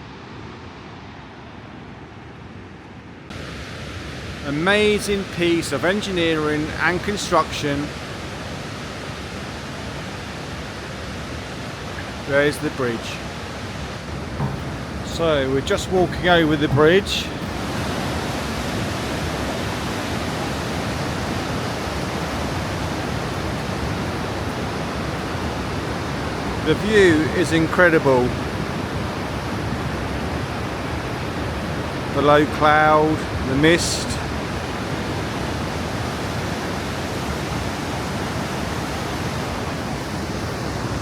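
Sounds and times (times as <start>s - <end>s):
waterfall roaring: 14.0s - 41.0s.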